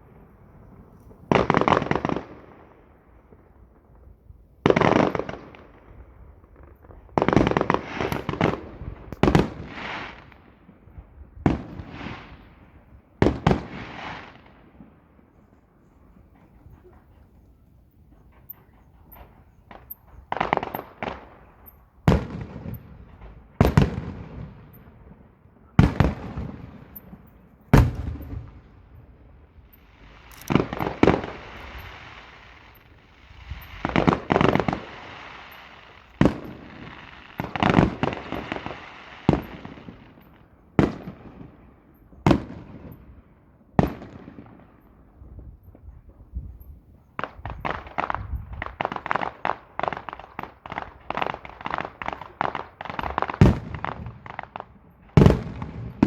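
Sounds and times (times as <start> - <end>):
fireworks shells bursting: 7.2 - 10.4, 18.1 - 24.0, 25.8 - 41.4, 46.6 - 56.0
fireworks crackling hiss: 7.2 - 10.5, 13.3 - 14.5, 29.6 - 40.4, 47.2 - 56.0.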